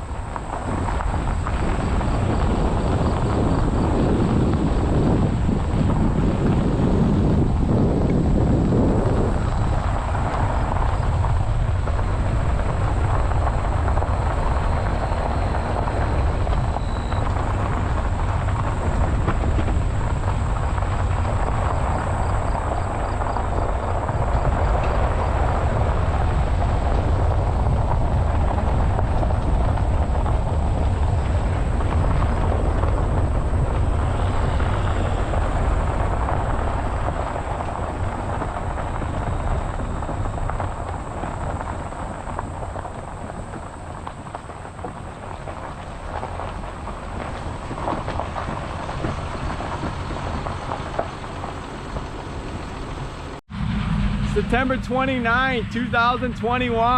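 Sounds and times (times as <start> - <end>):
wind buffeting microphone: 0.0 - 56.9
heavy machinery rumbling: 49.8 - 56.9.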